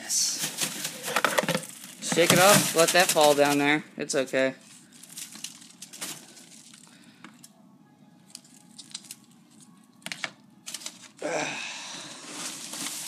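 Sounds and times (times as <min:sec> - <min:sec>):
rustling noise: 0:12.2 - 0:13.0.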